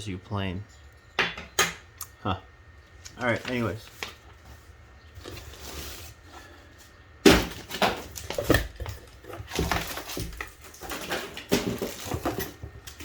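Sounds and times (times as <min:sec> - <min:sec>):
cardboard packaging rustling: 0:03.0 - 0:13.0.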